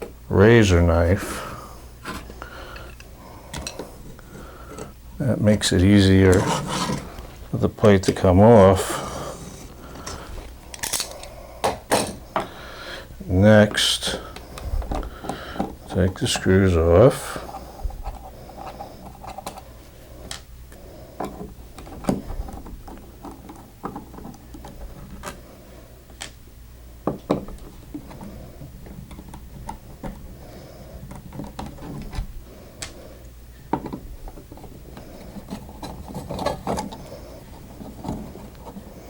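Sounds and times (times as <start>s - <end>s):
faint steady hum: 0.0s - 39.0s
screwdriver clicking and scraping metal: 10.0s - 11.3s, 34.6s - 37.1s.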